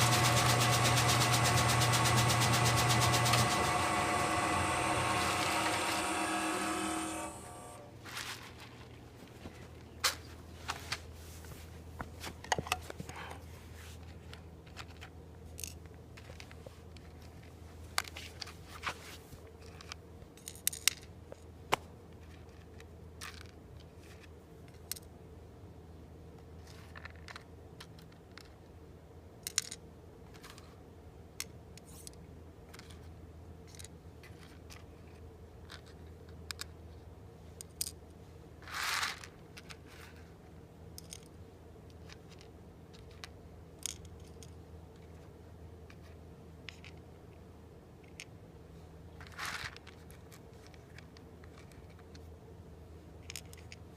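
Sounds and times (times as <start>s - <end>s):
machine humming: 0.0s - 7.9s.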